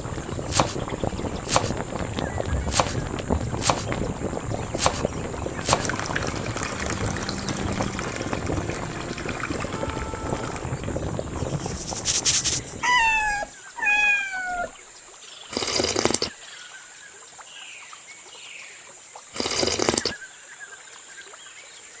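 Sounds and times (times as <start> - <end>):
rushing noise: 0.0 - 13.6
hissing noise bursts: 0.0 - 14.8
cat meowing: 12.8 - 14.8.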